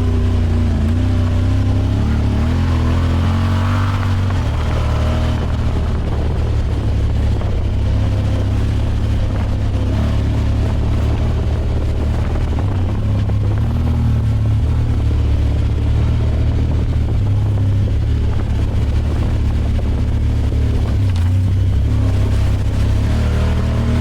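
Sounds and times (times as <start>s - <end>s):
engine droning at low speed: 0.0s - 24.0s.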